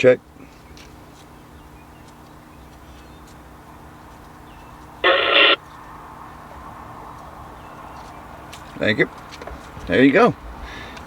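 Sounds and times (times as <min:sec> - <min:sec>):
faint steady hum: 0:00.0 - 0:05.6
cb radio burst: 0:05.0 - 0:05.6.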